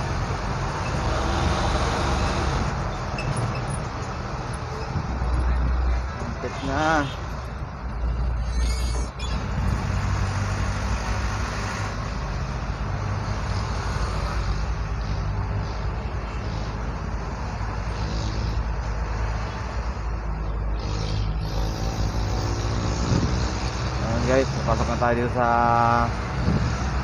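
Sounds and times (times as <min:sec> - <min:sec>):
truck engine running: 0:00.0 - 0:08.5
road and traffic noise: 0:00.0 - 0:27.0.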